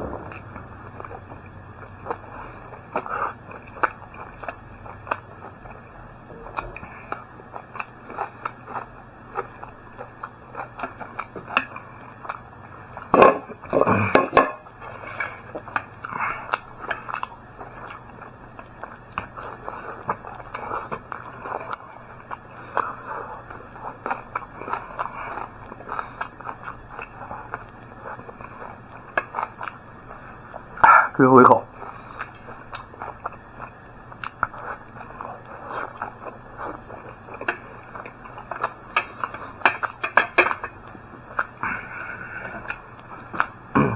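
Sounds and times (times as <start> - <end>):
person chewing close up: 0.0 - 43.9.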